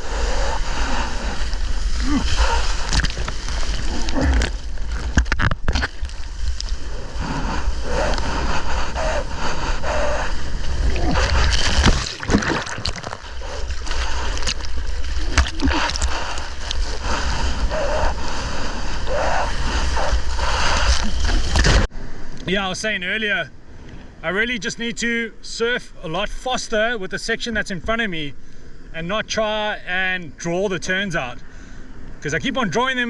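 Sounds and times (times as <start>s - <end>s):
seawater splashing and rushing: 0.0s - 21.9s
steady low rumble: 0.0s - 26.0s.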